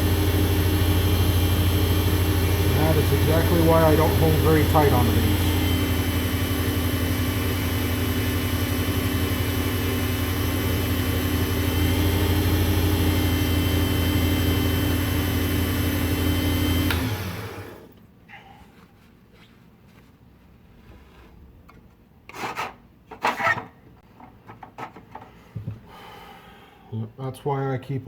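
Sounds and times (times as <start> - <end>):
lathe motor humming: 0.0 - 17.9.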